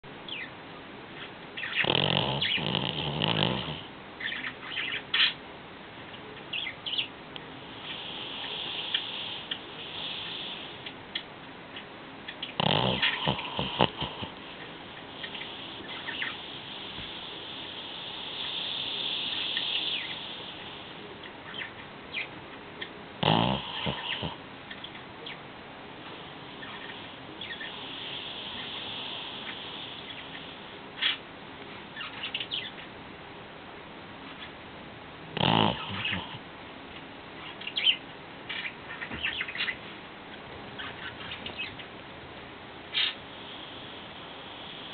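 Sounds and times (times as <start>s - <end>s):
dog snoring: 1.6s - 3.9s, 7.6s - 10.9s, 12.4s - 21.0s, 23.2s - 24.4s, 26.2s - 30.6s, 35.3s - 36.5s.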